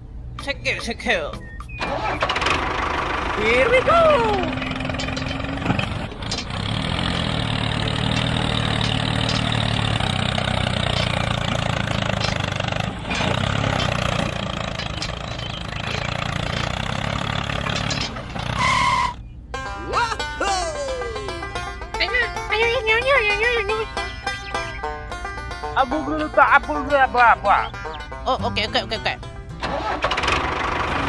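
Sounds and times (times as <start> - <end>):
tractor engine running: 0.0 - 31.0.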